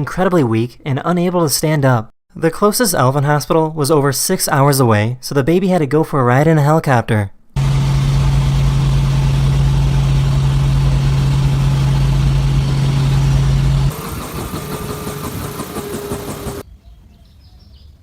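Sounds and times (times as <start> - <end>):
helicopter engine and rotor drone: 7.6 - 16.6.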